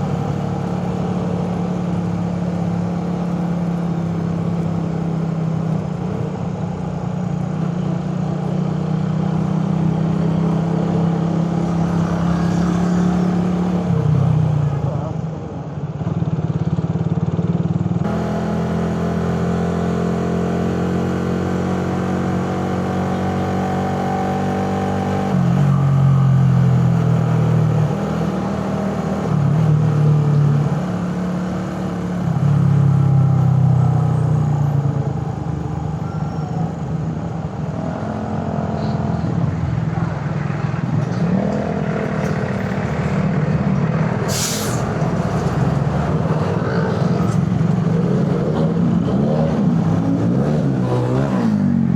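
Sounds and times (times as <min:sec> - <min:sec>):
motorcycle engine running: 0:14.8 - 0:20.3
brief hiss: 0:44.3 - 0:44.9.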